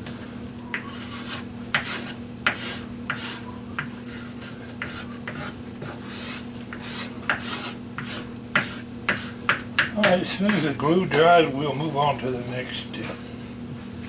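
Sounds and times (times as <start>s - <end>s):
steady low hum: 0.0s - 14.0s
hands rubbing on wood: 4.0s - 9.4s, 10.2s - 14.0s.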